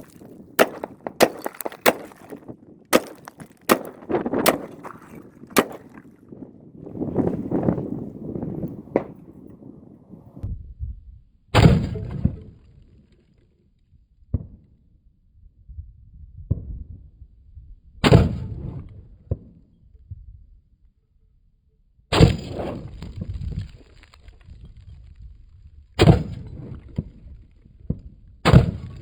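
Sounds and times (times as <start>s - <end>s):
rifle shots: 0.0s - 6.1s.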